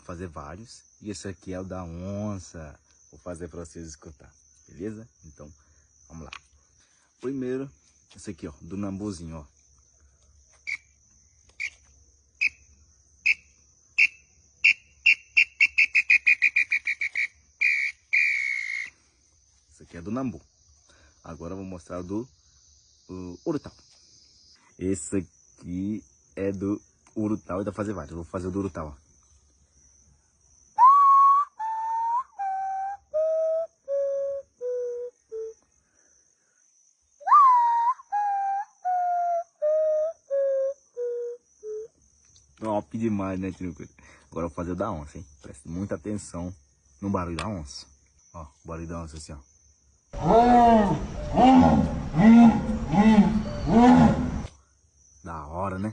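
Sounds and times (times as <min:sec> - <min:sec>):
cricket trill: 0:00.0 - 0:55.9
bird call whistle notes: 0:14.0 - 0:18.9, 0:30.8 - 0:35.6, 0:37.2 - 0:41.9.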